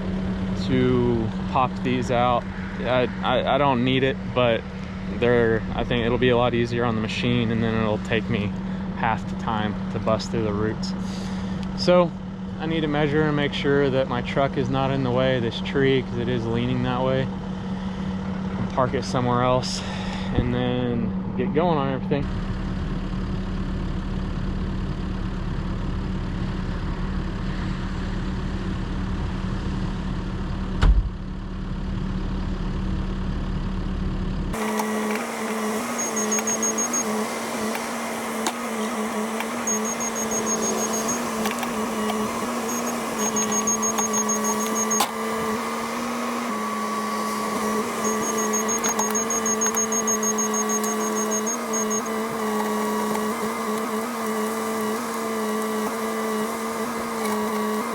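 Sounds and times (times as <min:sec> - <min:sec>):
excavator machine whine: 0:00.0 - 0:20.9, 0:32.7 - 0:57.9
vehicle engine idling: 0:00.0 - 0:57.9
rapid high-pitched beeps: 0:35.8 - 0:37.1, 0:39.6 - 0:45.1, 0:48.0 - 0:52.6.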